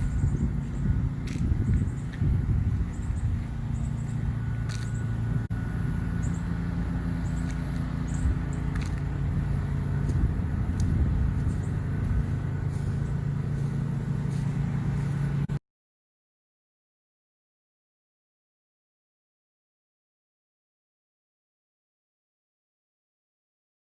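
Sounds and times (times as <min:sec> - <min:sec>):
car engine and road rumble: 0:00.0 - 0:15.6.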